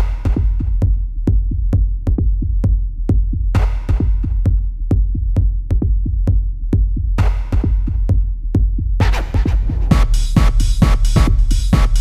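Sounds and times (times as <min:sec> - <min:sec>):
electronic music with drum machine: 0:09.0 - 0:12.0.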